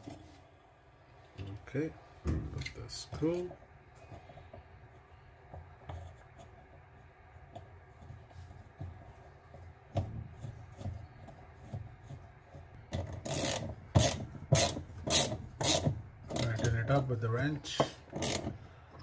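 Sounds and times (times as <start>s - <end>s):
wrench rasping strokes: 13.2s - 16.7s, 18.1s - 18.6s.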